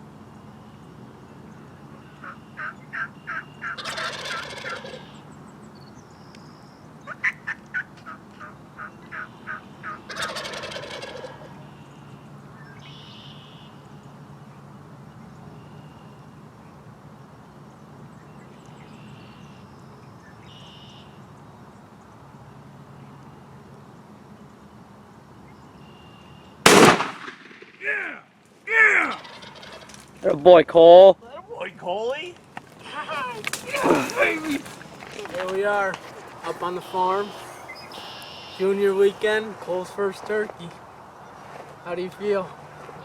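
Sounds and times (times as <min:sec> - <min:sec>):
faint songbird notes: 0:00.0 - 0:10.6, 0:11.3 - 0:26.6, 0:32.8 - 0:43.0
turkey gobble: 0:02.0 - 0:05.2, 0:07.1 - 0:11.8, 0:28.8 - 0:30.2, 0:32.8 - 0:39.1
turkey yelps: 0:02.1 - 0:05.2, 0:07.1 - 0:11.8, 0:28.7 - 0:30.1, 0:32.8 - 0:38.8.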